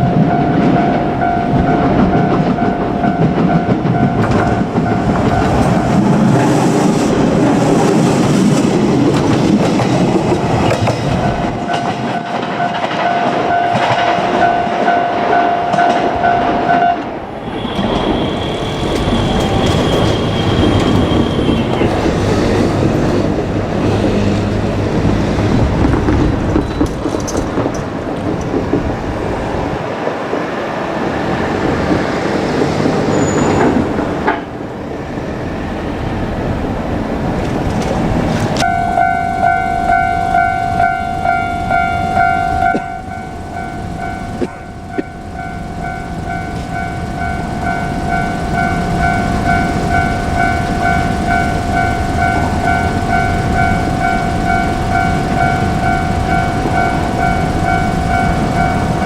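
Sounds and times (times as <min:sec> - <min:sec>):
level-crossing warning bell: 0:00.0 - 0:25.4, 0:38.6 - 0:59.0
electric train on rails: 0:00.0 - 0:59.0.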